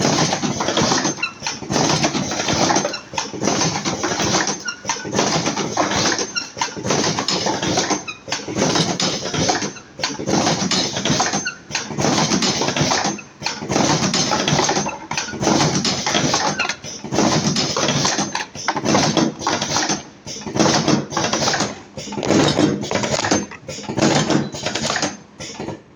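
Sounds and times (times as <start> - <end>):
cartoning machine running: 0.0 - 25.9.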